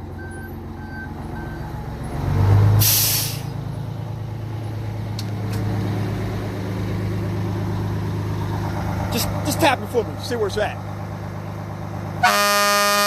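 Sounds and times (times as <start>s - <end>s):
truck engine idling: 0.0s - 13.0s
compressed air hiss: 2.8s - 3.5s.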